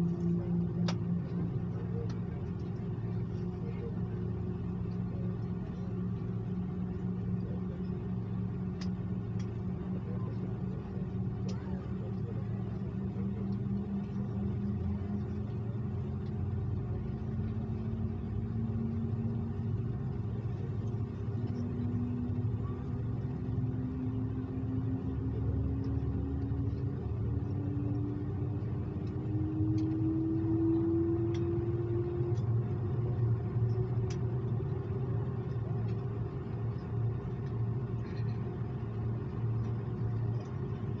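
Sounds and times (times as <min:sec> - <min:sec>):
jet engines rumbling in cabin: 0:00.0 - 0:41.0
faint clicks: 0:08.7 - 0:15.4, 0:28.9 - 0:30.1, 0:31.2 - 0:31.5, 0:33.6 - 0:34.7, 0:35.4 - 0:41.0.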